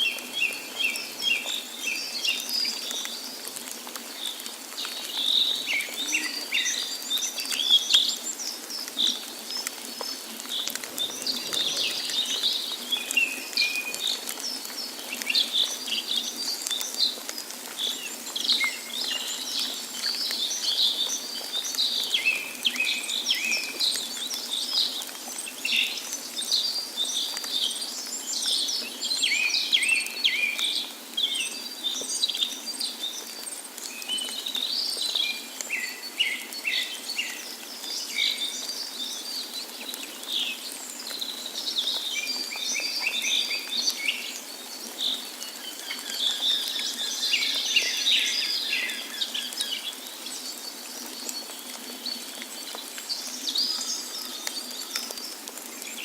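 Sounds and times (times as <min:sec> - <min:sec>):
birds chirping and calling: 0:10.0 - 0:14.6.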